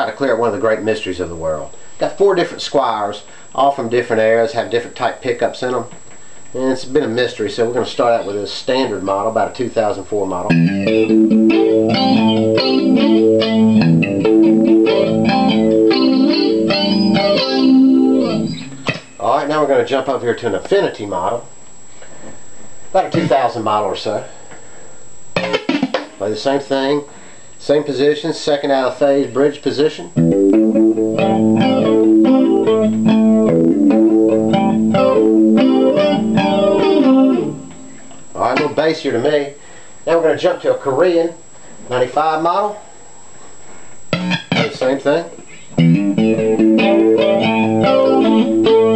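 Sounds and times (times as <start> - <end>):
electric guitar picked notes and chords: 10.5 - 19.2, 30.2 - 38.3, 44.1 - 44.8, 45.8 - 48.9.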